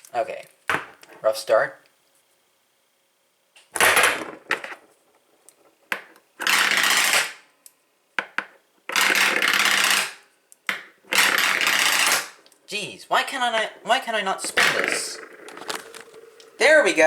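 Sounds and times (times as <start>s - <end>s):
padlock spinning on hard surface: 6.4s - 7.4s, 8.9s - 10.2s, 11.1s - 12.4s, 14.4s - 16.6s.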